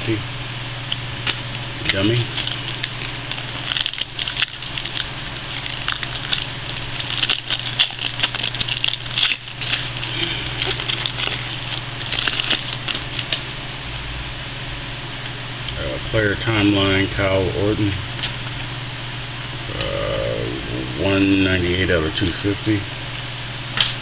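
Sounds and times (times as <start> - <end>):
steady low hum: 0.0 - 24.0
cards rustling and clicking: 1.9 - 13.5.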